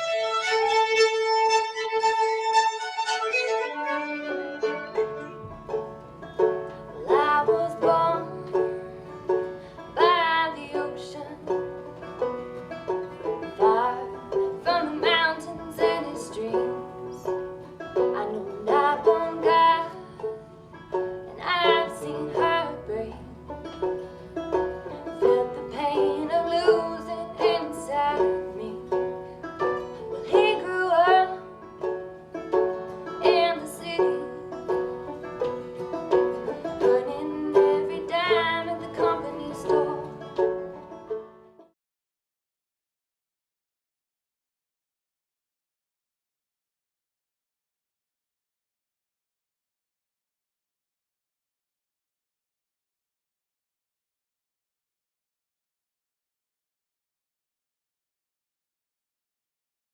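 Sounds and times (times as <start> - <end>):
acoustic string band playing: 0.0 - 41.3
banjo picking: 0.0 - 41.7.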